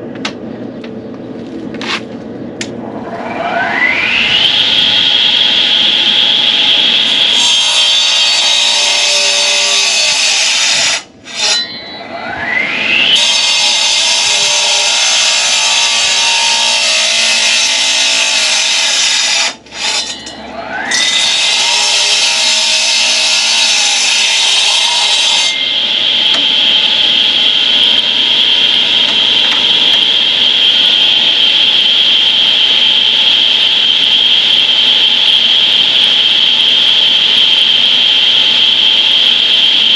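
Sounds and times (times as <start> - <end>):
concrete saw engine: 2.8 - 39.9
saw blade grinding concrete: 7.0 - 25.8.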